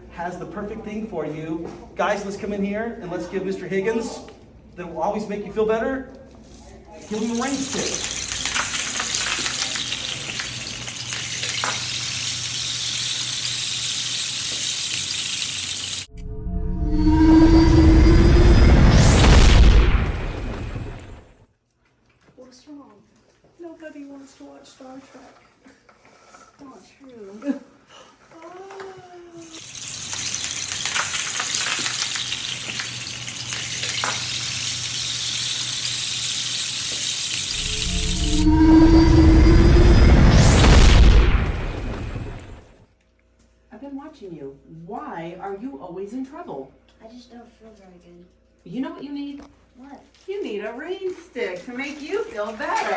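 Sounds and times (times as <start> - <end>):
rain stick pellets cascading: 7.0 - 16.1, 17.2 - 21.3, 29.4 - 42.8, 51.6 - 52.9.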